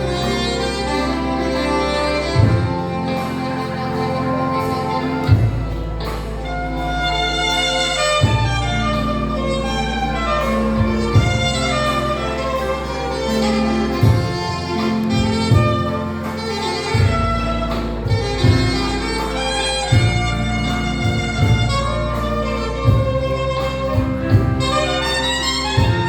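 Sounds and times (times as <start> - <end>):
live band instrumental: 0.0 - 26.0
drum hits: 2.4 - 3.1, 10.6 - 12.0, 14.0 - 16.2, 17.0 - 22.1, 22.8 - 25.0, 25.7 - 26.0.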